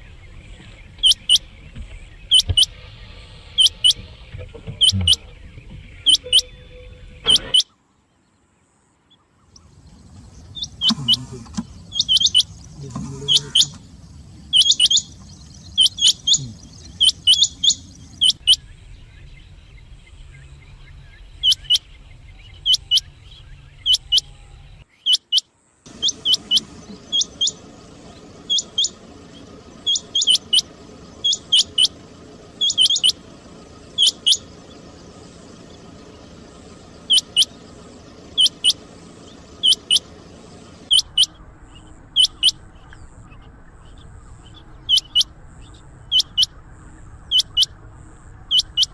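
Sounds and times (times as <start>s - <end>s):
quail calling: 0.4s - 2.8s, 3.5s - 5.3s, 5.9s - 7.7s, 9.5s - 18.6s, 21.4s - 21.9s, 22.6s - 23.1s, 23.8s - 24.4s, 25.1s - 46.6s, 47.2s - 47.8s, 48.5s - 48.9s.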